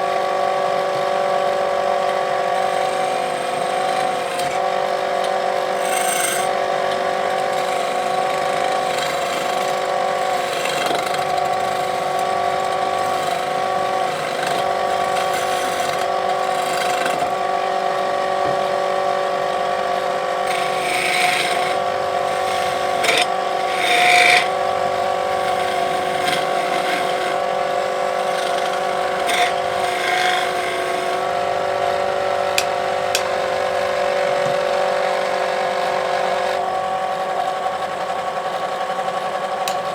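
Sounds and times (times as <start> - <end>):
lathe motor humming: 0.0 - 39.9
tool scraping spinning wood: 1.2 - 39.9.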